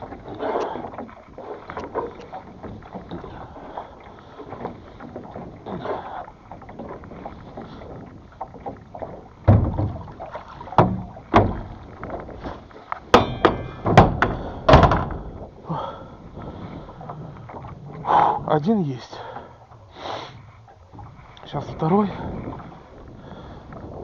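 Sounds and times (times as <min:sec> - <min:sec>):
anchor knocking against hull: 0:00.0 - 0:15.6, 0:20.4 - 0:22.8
metallic clank: 0:13.1 - 0:15.3.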